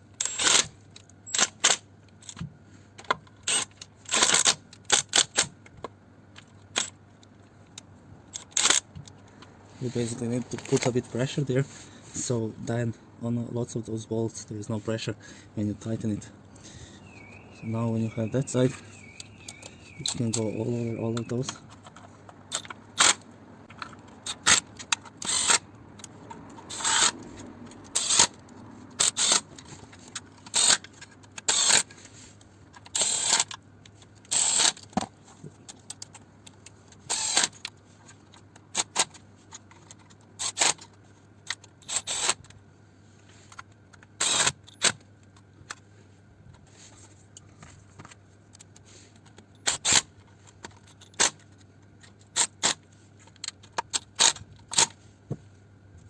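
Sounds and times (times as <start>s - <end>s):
ratchet wrench clicking: 23.8s - 29.6s, 30.4s - 31.9s, 34.3s - 34.9s, 44.2s - 45.0s.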